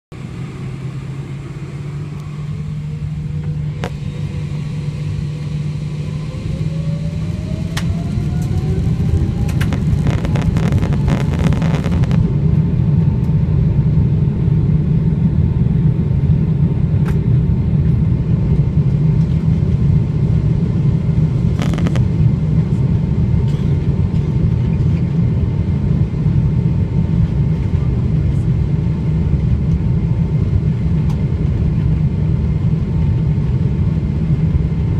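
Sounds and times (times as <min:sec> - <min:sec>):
heavy rumble of takeoff roll: 0:00.1 - 0:34.9
jet engines whining: 0:00.2 - 0:26.9.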